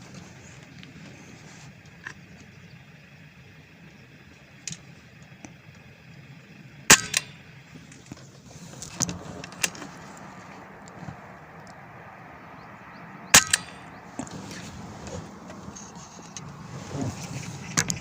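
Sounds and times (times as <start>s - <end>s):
air rifle shot: 6.9s - 7.3s, 13.3s - 13.8s.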